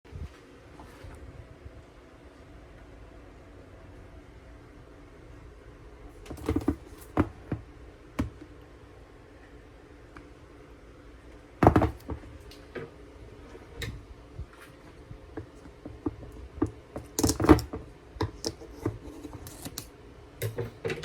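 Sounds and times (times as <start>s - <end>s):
plastic box clicking and knocking: 11.6s - 12.2s.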